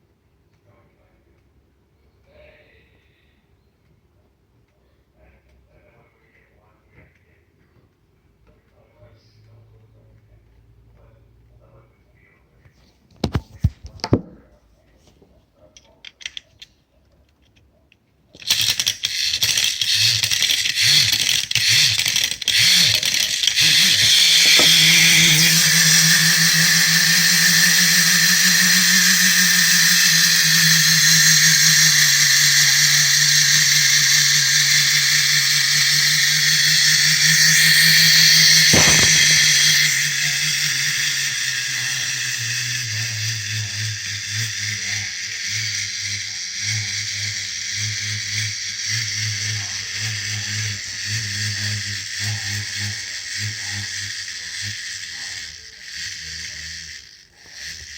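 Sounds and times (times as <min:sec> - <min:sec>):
clicks: 0:15.8 - 0:42.0
clockwork toy whirring buzz: 0:18.3 - 0:57.9.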